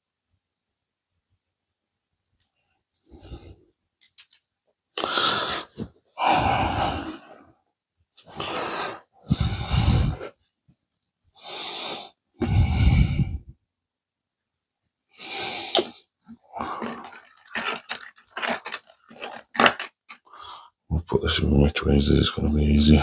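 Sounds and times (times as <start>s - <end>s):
person breathing: 5.0s - 7.5s, 8.2s - 10.4s, 11.4s - 13.6s, 15.2s - 18.0s, 20.2s - 20.8s.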